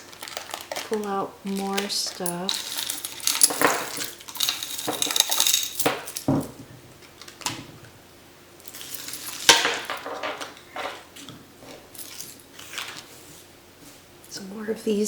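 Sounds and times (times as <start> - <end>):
jewelry and beads clinking: 0.0 - 6.6, 8.6 - 12.8.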